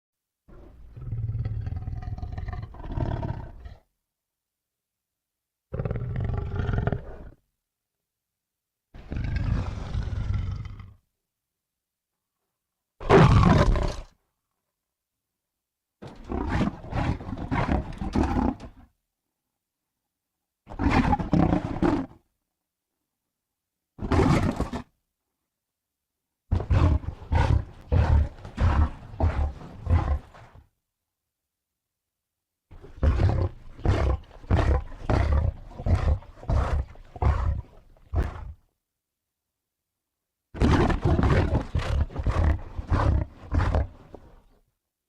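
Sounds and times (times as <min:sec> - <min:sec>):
creature guttural roars: 0:13.0 - 0:14.2, 0:26.5 - 0:30.4, 0:40.6 - 0:44.0.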